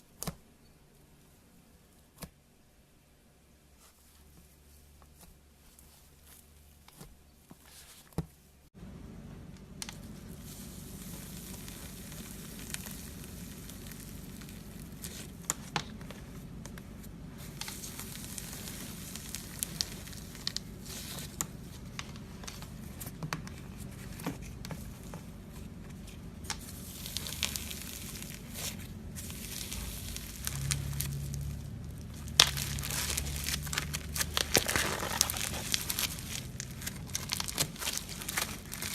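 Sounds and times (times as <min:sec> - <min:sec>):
slime squished by hand: 0:09.9 - 0:38.9.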